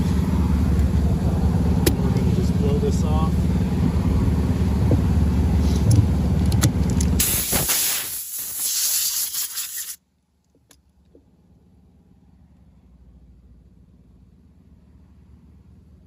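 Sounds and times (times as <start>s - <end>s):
compressed air blow gun hiss: 7.2s - 10.0s.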